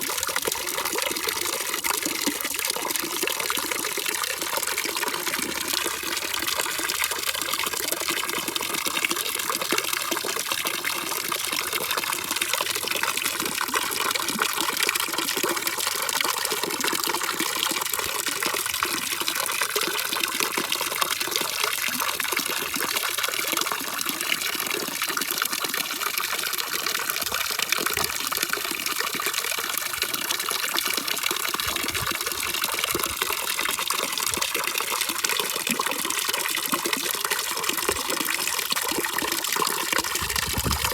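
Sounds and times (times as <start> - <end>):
water rushing: 26.0 - 35.7, 37.2 - 40.9.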